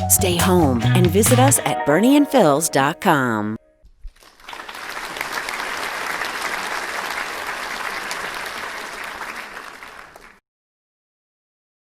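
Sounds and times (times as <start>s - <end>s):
audience applauding: 4.2s - 10.4s.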